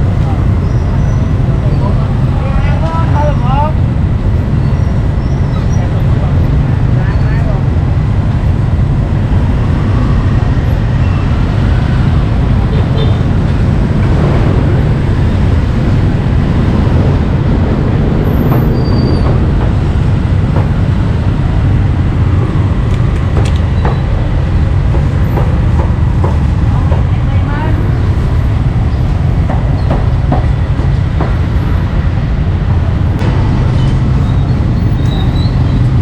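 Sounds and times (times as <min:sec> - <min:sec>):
low rumble of road traffic: 0:00.0 - 0:36.0
street bustle: 0:00.0 - 0:36.0
scattered knocks: 0:18.4 - 0:21.0, 0:23.0 - 0:27.2, 0:29.4 - 0:31.7.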